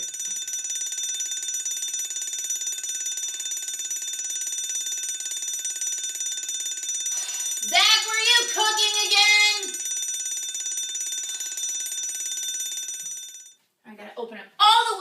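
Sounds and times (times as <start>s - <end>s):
smoke alarm beeping: 0.0s - 13.6s.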